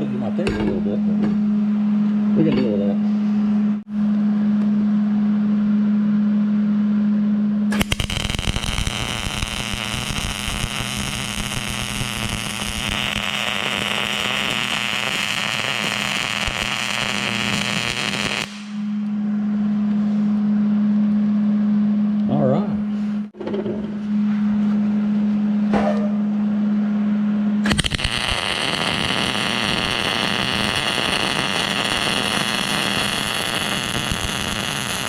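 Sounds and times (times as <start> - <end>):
steady hum: 0.0 - 35.0
welding arc crackling: 7.7 - 19.0, 27.6 - 35.0.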